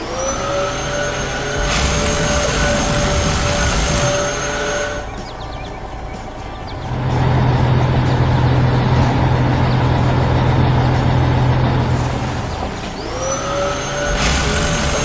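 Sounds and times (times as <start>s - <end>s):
hiss: 0.0s - 5.0s, 11.9s - 15.0s
heavy vehicle engine hum: 0.0s - 15.0s
rising whine: 0.0s - 15.0s.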